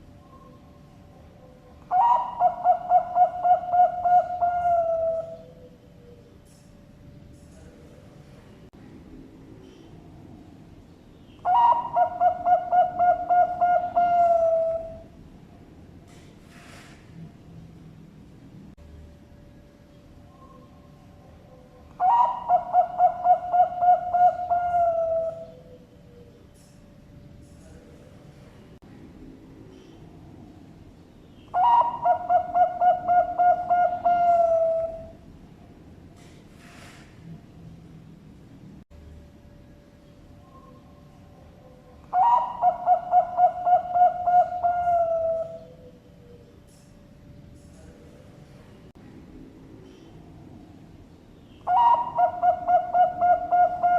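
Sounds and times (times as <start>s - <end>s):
dove cooing: 0.0s - 6.4s, 11.4s - 15.2s, 20.3s - 26.4s, 31.4s - 35.2s, 40.4s - 46.6s, 51.6s - 53.9s.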